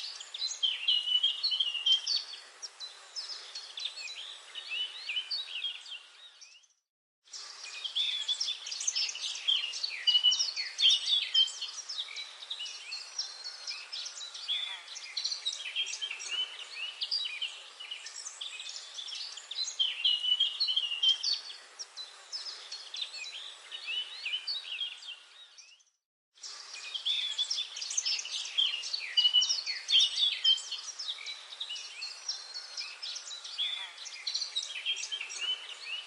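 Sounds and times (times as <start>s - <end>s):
songbirds chirping and trilling: 0.0s - 36.0s
background hiss: 7.3s - 25.2s, 26.4s - 36.0s.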